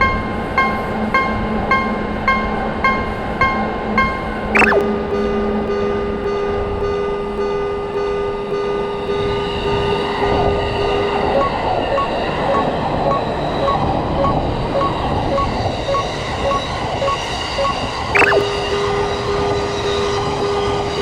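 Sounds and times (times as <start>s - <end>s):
brief sharp high squeal: 4.6s - 4.8s, 18.2s - 18.5s.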